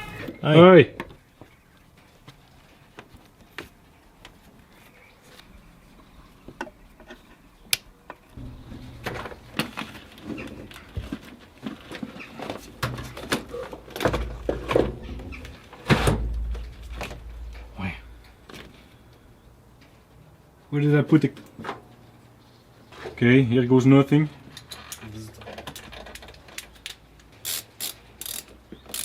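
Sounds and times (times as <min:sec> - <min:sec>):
low hum: 0:08.4 - 0:10.8, 0:14.6 - 0:19.5.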